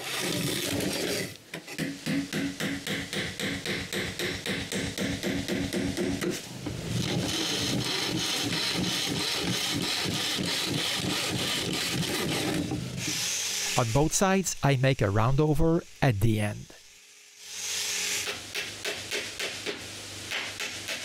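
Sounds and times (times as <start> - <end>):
hand tool scraping wood: 0.0 - 1.4, 6.2 - 13.8.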